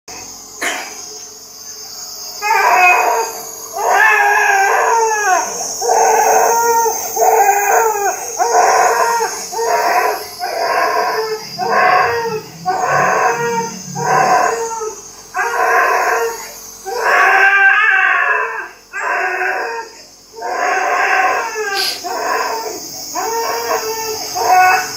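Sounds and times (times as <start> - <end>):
nebulizer hissing: 1.0 - 24.9.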